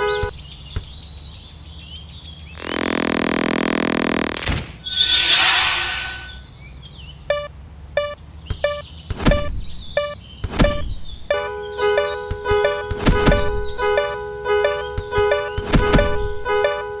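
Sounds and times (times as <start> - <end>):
rushing noise: 4.8 - 6.6.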